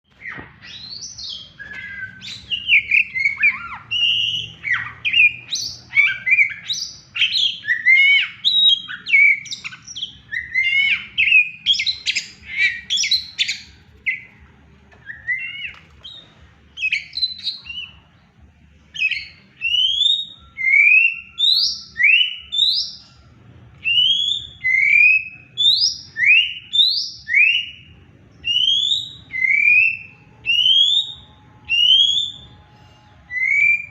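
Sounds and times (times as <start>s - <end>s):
bird singing whistles and chirps: 0.1s - 33.9s.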